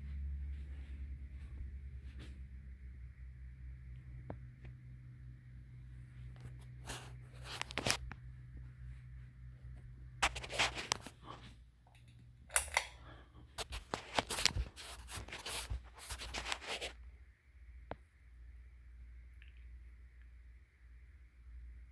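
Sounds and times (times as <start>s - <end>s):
steady low hum: 0.0s - 21.9s
scratching and rubbing noise: 6.0s - 9.1s, 10.1s - 11.6s, 13.6s - 17.0s.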